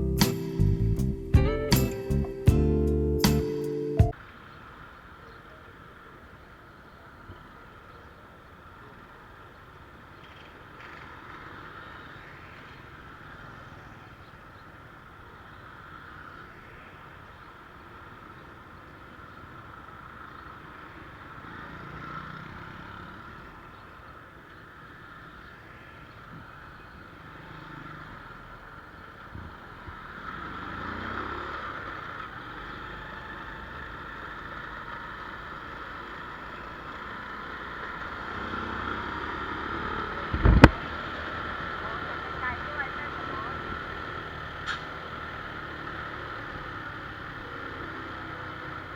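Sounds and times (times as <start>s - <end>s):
vehicle engine running: 0.0s - 3.5s, 29.8s - 48.9s
outdoor background noise: 0.0s - 48.9s.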